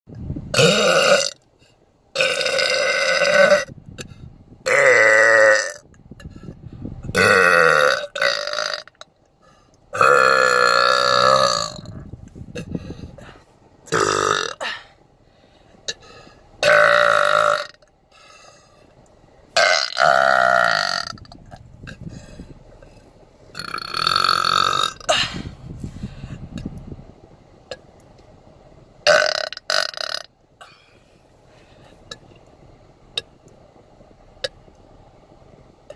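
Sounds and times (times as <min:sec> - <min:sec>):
woman belching loudly: 0:00.5 - 0:01.4, 0:02.2 - 0:03.7, 0:04.6 - 0:05.8, 0:07.1 - 0:09.0, 0:10.0 - 0:12.0, 0:13.9 - 0:14.7, 0:16.6 - 0:17.8, 0:19.6 - 0:21.3, 0:23.6 - 0:25.5.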